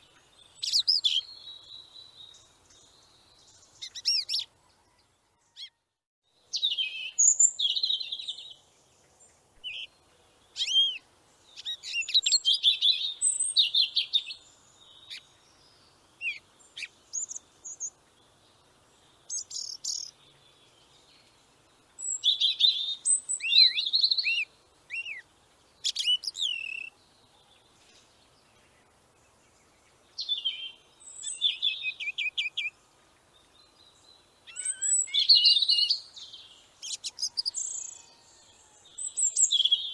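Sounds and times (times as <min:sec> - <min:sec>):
birds chirping and trilling: 0:00.0 - 0:05.8, 0:06.5 - 0:39.9.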